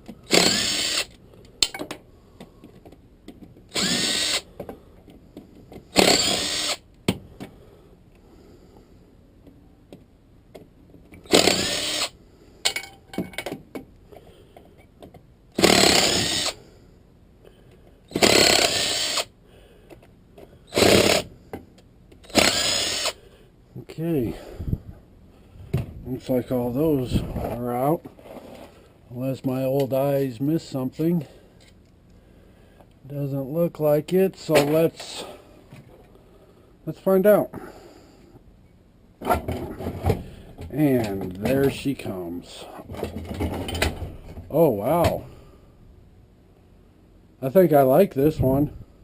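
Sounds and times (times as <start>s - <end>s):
power drill running in bursts: 0.3s - 1.1s, 3.7s - 4.4s, 5.9s - 6.8s, 11.3s - 12.2s, 15.6s - 16.6s, 18.1s - 19.3s, 20.7s - 21.3s, 22.2s - 23.2s.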